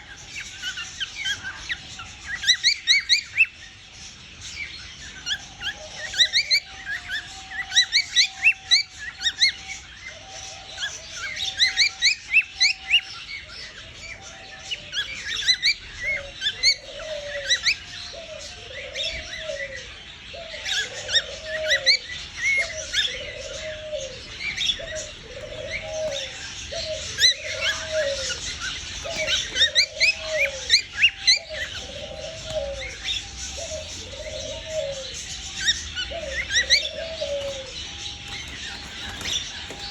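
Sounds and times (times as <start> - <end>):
cockatiel humming: 20.6 - 39.9.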